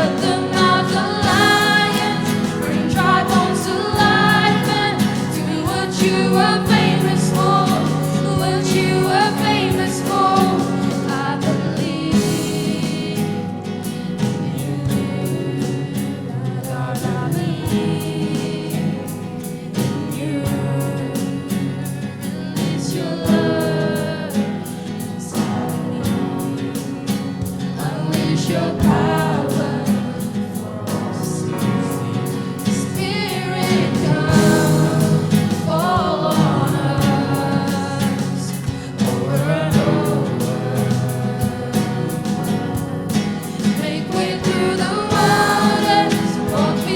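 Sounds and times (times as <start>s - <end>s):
band playing: 0.0s - 15.1s, 30.8s - 46.9s
lead voice singing runs: 0.0s - 19.3s, 27.5s - 46.9s
steady drum beat: 0.0s - 21.8s, 25.3s - 46.9s
group of singers: 0.0s - 46.9s.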